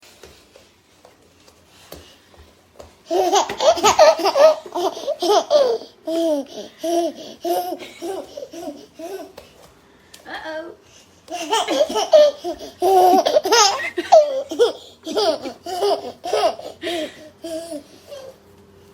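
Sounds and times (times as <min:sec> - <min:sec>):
baby laughing: 0:03.1 - 0:09.4, 0:11.3 - 0:18.3.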